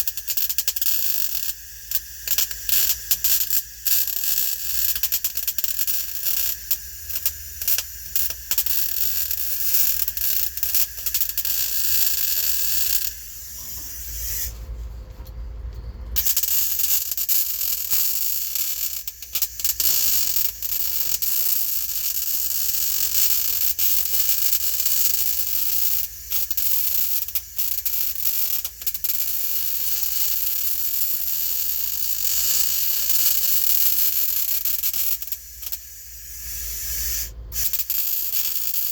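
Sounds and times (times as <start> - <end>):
welding arc crackling: 0.0 - 14.6, 16.2 - 38.9.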